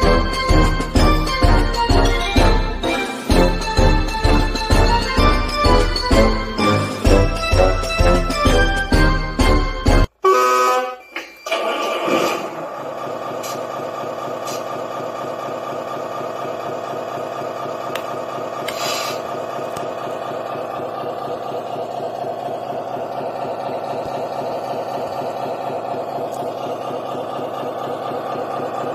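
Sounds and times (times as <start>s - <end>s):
diesel engine idle through small speaker: 13.4s - 28.9s.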